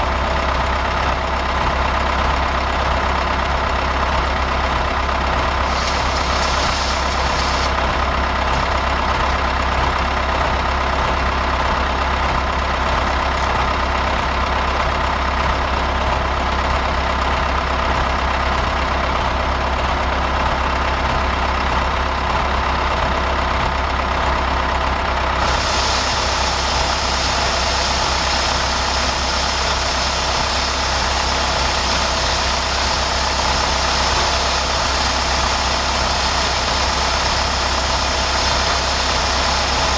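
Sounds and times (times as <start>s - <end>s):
diesel tractor engine running: 0.0s - 39.9s
high-pitched hiss: 25.4s - 39.9s.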